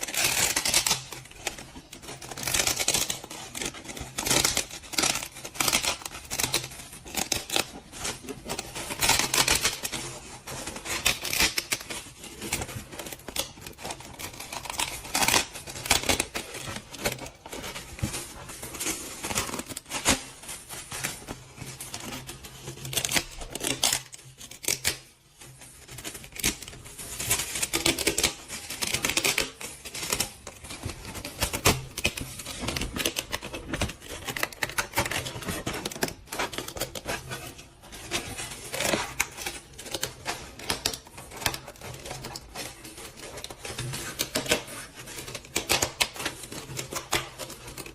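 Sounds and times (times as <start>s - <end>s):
scratchy scraping: 0.0s - 47.9s.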